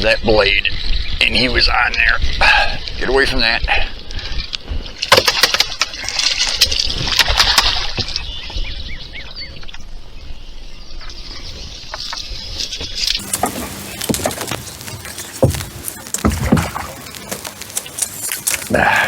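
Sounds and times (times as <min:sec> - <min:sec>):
water splashing: 0:13.2 - 0:19.0.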